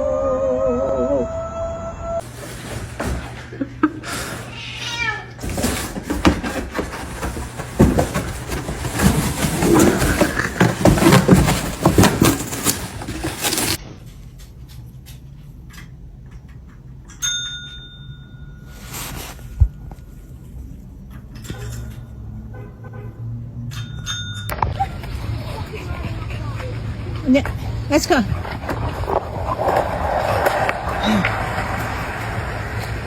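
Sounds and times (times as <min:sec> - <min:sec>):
clattering and rustling: 0:02.2 - 0:15.8.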